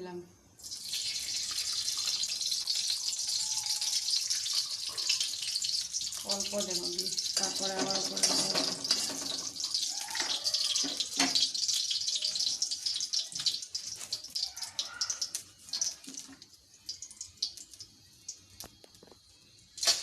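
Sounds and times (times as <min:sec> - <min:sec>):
ghee sizzling and crackling: 0:00.5 - 0:20.0.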